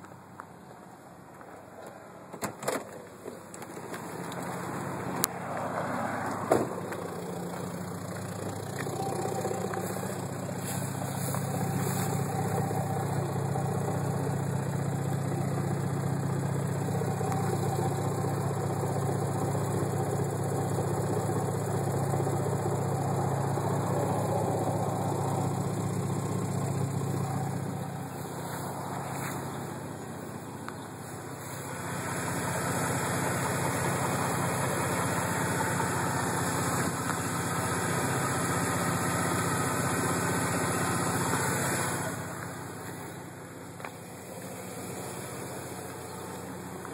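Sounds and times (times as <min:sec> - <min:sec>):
car engine running: 0:02.9 - 0:46.9
faint thin whine: 0:08.6 - 0:18.6.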